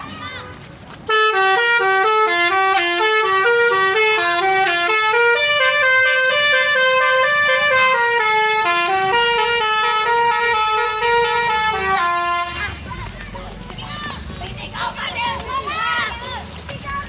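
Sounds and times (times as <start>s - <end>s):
bus musical horn playing a tune: 1.1s - 12.8s.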